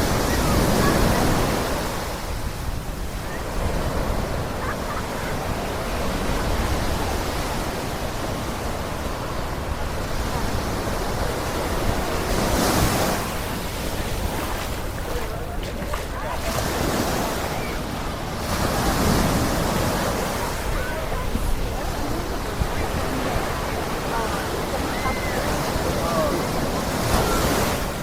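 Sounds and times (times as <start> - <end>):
ocean surf washing onto beach: 0.0 - 28.0.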